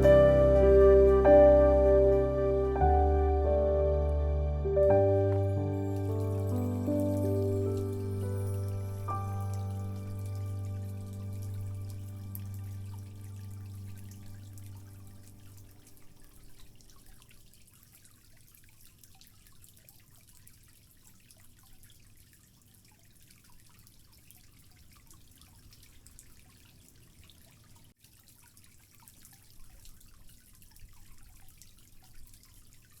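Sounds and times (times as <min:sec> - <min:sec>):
low pump hum: 0:00.0 - 0:17.4
small waterfall trickling and dripping: 0:04.9 - 0:33.0.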